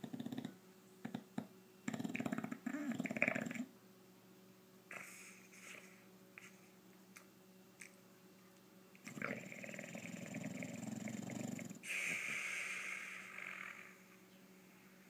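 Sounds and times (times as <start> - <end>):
dog snoring: 0.0 - 3.7, 4.9 - 6.6, 9.0 - 14.2.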